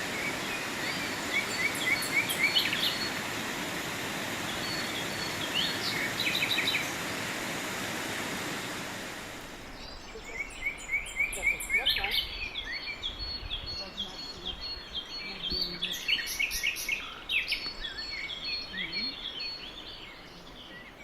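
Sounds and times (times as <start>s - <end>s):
small birds chirping and trilling: 0.0s - 7.4s, 9.6s - 21.0s
falling water rushing: 0.0s - 12.2s.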